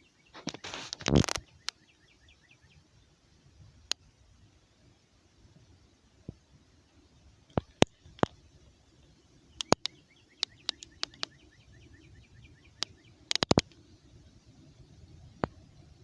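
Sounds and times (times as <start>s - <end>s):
faint bird chirps: 0.0s - 16.0s
sharp clicks and taps: 9.6s - 11.4s, 12.8s - 13.8s.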